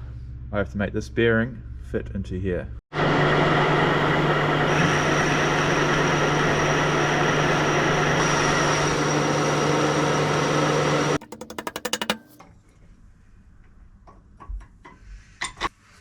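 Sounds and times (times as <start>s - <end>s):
metal lathe hum: 3.0s - 12.4s.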